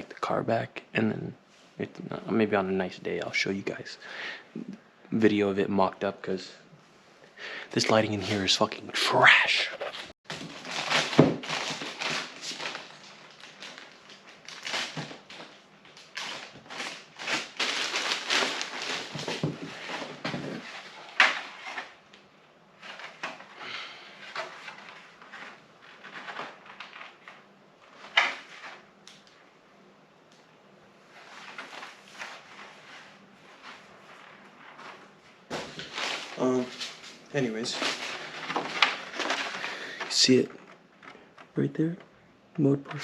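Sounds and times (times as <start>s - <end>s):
packaging rustling and crinkling: 9.8s - 22.0s, 24.2s - 28.8s, 31.2s - 41.6s.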